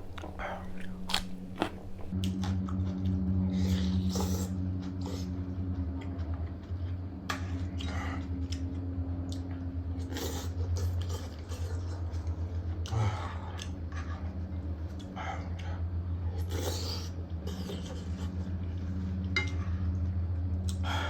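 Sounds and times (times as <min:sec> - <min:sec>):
steady low hum: 0:00.0 - 0:02.2, 0:17.2 - 0:21.0
chewing and mouth noises: 0:00.0 - 0:05.3, 0:07.6 - 0:15.6.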